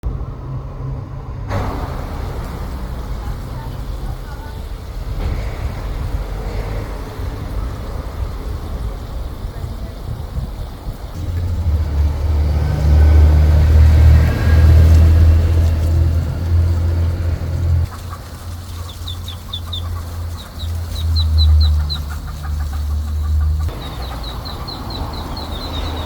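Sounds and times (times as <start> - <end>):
loud low rumble: 0.1 - 18.0
duckling peeping: 17.9 - 26.0.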